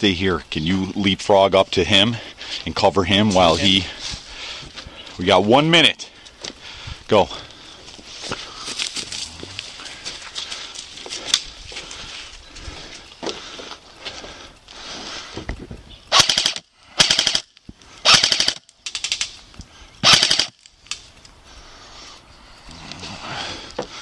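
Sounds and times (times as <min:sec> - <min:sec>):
airsoft gun full-auto bursts: 0:16.1 - 0:18.6, 0:20.0 - 0:20.6.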